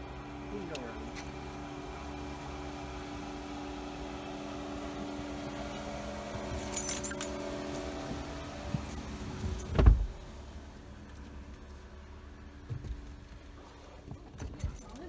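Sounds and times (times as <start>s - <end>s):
car engine hum: 0.0s - 15.0s
metallic jingling clicks: 6.5s - 8.2s.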